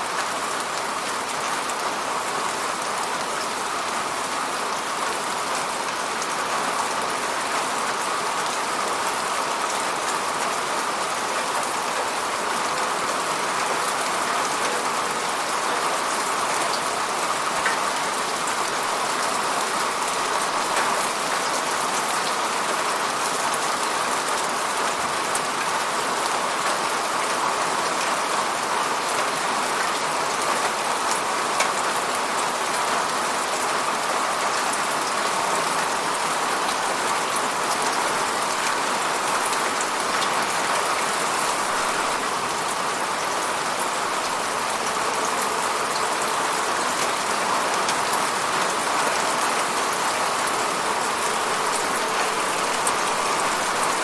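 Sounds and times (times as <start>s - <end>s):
rain hissing on a surface: 0.0s - 54.0s.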